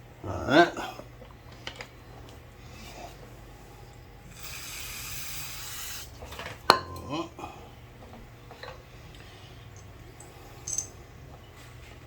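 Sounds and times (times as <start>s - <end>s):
low steady hum: 0.0s - 12.0s
spray hissing: 4.3s - 6.1s.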